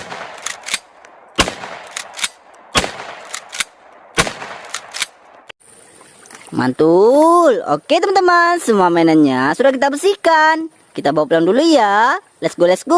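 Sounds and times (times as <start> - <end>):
shotgun blasts: 0.0 - 5.5.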